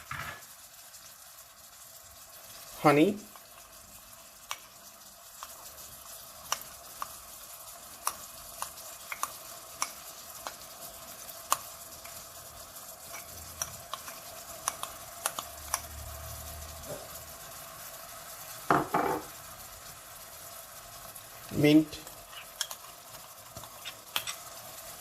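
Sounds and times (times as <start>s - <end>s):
syrup sizzling: 0.0s - 25.0s
spoon clicking against pan: 6.4s - 7.2s, 8.0s - 10.6s, 13.1s - 15.9s, 22.5s - 22.9s.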